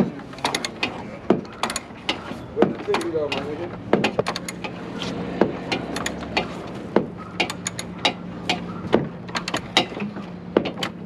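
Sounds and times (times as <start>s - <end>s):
steady low hum: 0.0s - 11.0s
hand tools clicking on plastic: 0.4s - 4.7s.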